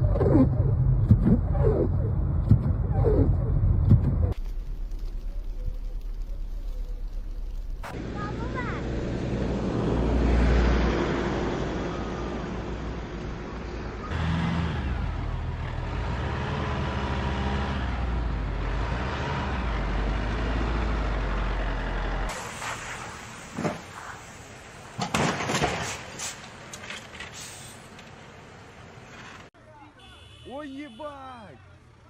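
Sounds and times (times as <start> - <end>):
heavy vehicle engine humming: 2.1 - 25.1.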